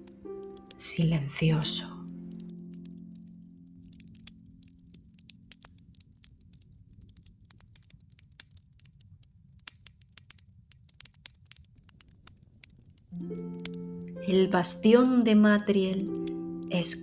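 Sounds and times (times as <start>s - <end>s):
campfire crackling: 0.0s - 17.0s.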